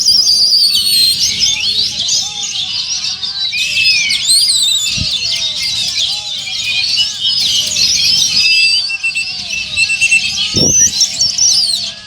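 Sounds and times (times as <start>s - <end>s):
chorus of songbirds singing: 0.0s - 12.0s.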